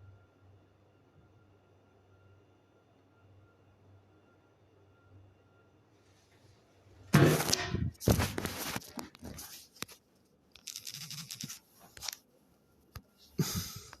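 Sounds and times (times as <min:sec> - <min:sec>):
crackly rustling: 0:07.4 - 0:12.3.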